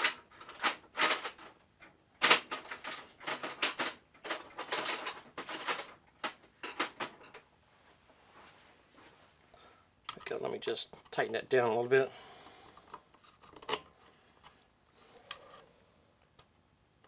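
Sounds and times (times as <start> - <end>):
hand tools clicking and clattering: 0.0 - 7.4.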